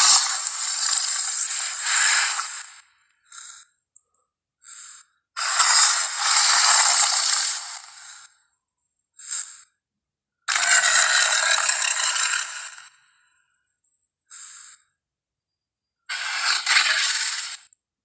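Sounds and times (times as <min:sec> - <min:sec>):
raspy hissing dinosaur breaths: 0:00.1 - 0:03.8, 0:04.6 - 0:08.4, 0:09.2 - 0:09.8, 0:14.3 - 0:14.9.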